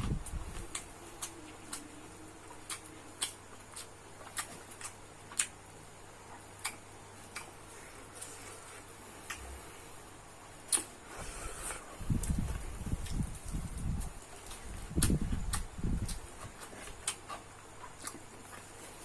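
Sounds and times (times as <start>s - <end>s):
eating mouth sounds: 0.0s - 5.6s, 10.7s - 19.0s.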